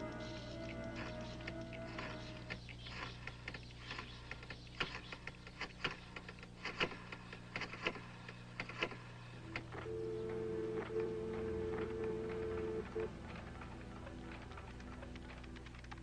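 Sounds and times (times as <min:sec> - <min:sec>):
steady low hum: 0:00.0 - 0:16.0
sharp mechanical clicks: 0:00.1 - 0:09.9.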